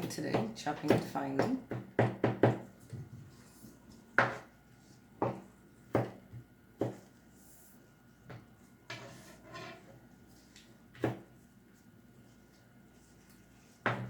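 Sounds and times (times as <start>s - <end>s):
knife chopping on a cutting board: 4.2s - 4.5s, 5.2s - 6.2s, 6.8s - 7.1s, 11.0s - 11.3s.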